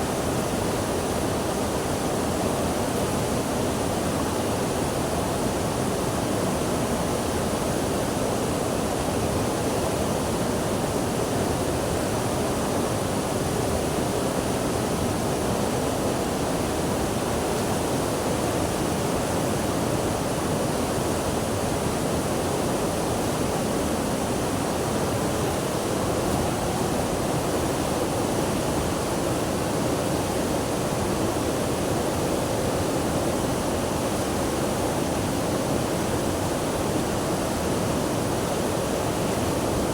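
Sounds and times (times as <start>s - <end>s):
water rushing: 12.3s - 39.9s.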